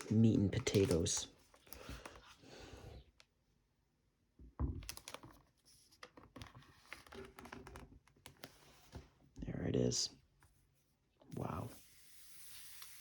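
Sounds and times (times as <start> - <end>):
paper packaging crinkling: 0.0 - 2.4.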